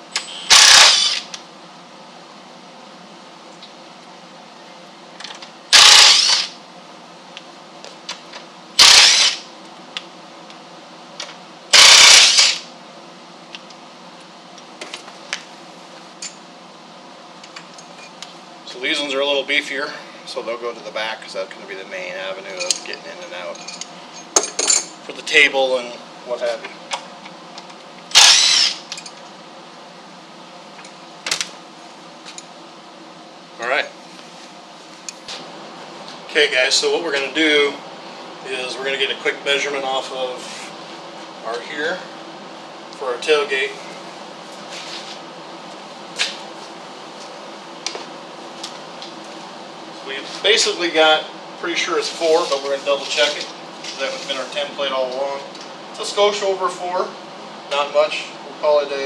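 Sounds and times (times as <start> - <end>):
power drill running: 0.2 - 1.3, 5.7 - 6.6, 8.8 - 9.5, 11.7 - 12.7, 28.1 - 28.9.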